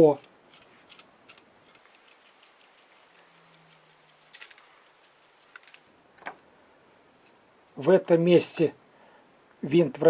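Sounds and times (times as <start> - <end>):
light metallic ticks of lathe screw: 0.2 - 5.6.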